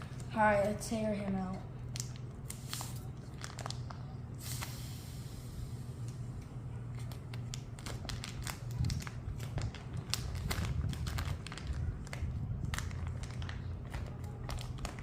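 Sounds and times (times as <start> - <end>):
packaging crinkling and crackling: 1.8 - 4.8, 6.9 - 15.0.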